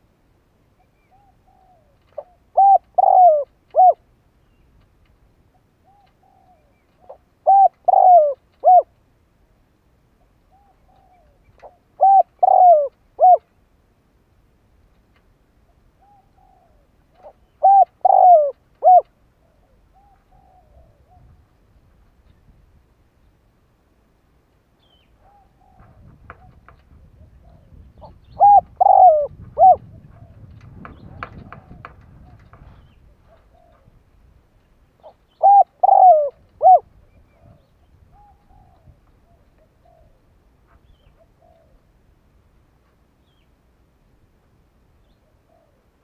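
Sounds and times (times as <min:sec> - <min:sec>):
dove cooing: 0:01.0 - 0:04.0, 0:05.8 - 0:09.0, 0:10.5 - 0:13.5, 0:16.0 - 0:21.4, 0:25.2 - 0:34.0, 0:35.0 - 0:40.3, 0:40.9 - 0:41.9, 0:45.2 - 0:45.9.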